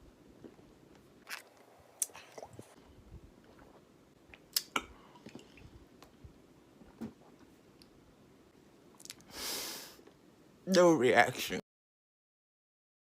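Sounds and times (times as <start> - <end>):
person chewing: 0.4 - 2.8, 3.4 - 6.2.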